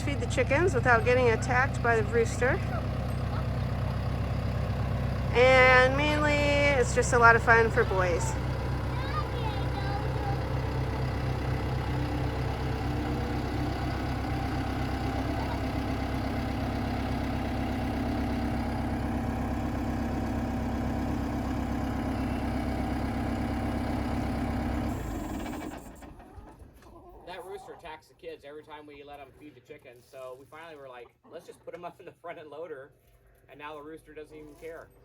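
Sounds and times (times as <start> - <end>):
tractor engine running: 0.0 - 26.8.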